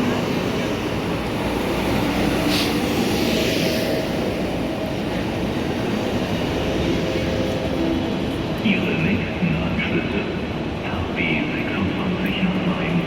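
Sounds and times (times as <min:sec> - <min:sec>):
train rumbling: 0:00.0 - 0:13.0.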